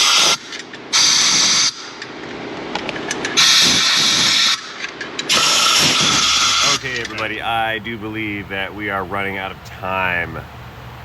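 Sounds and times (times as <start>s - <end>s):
compressed air blowgun hissing: 3.4s - 4.7s, 5.3s - 10.0s.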